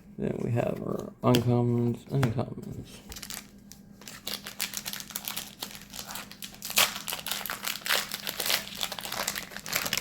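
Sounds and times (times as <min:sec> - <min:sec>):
foil wrapper crinkling: 0:03.1 - 0:10.0.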